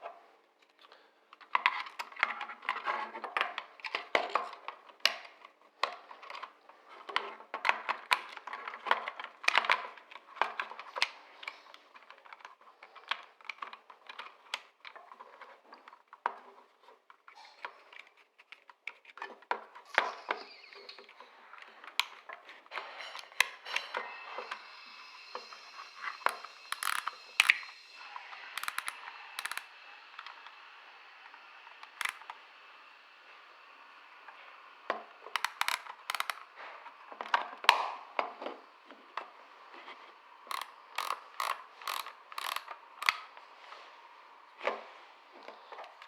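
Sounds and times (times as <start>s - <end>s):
film winding ratchet clicking: 26.0s - 27.7s, 28.6s - 29.7s, 31.8s - 32.3s, 35.4s - 36.4s, 40.5s - 43.3s
camera clicks: 28.6s - 29.6s, 40.5s - 43.2s.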